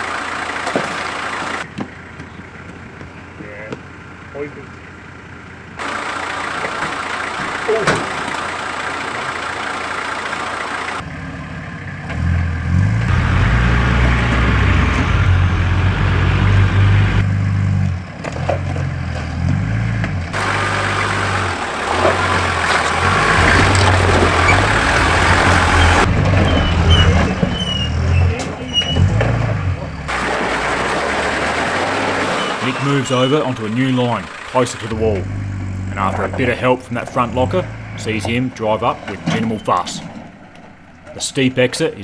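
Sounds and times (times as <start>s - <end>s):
engine rumbling under load: 0.0s - 42.0s.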